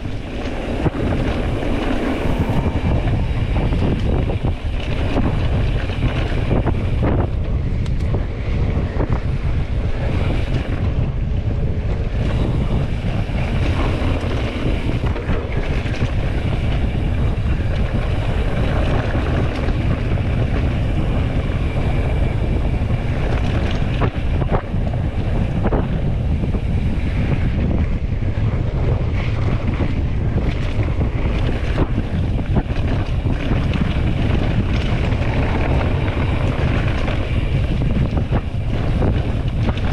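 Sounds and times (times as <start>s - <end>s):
wind buffeting microphone: 0.0s - 39.9s.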